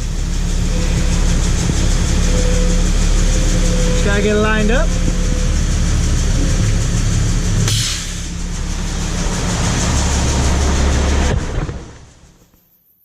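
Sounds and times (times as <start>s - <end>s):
diesel truck engine running: 0.0s - 12.6s
short hiss: 7.7s - 8.2s.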